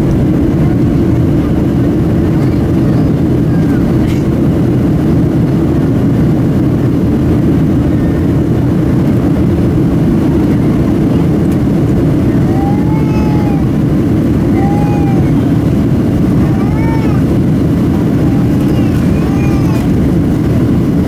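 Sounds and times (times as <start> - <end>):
airplane cabin roar: 0.0 - 21.0
rising and falling cries: 12.4 - 20.1.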